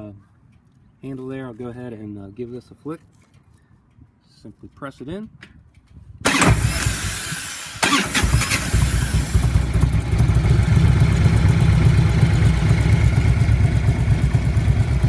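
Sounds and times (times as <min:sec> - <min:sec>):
motorcycle engine starting and idling: 0:06.2 - 0:15.0.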